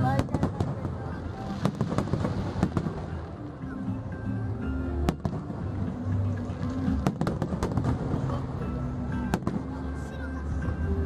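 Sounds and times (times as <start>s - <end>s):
fireworks cracking: 0.0s - 3.2s, 6.7s - 8.4s
music playing: 0.0s - 11.0s.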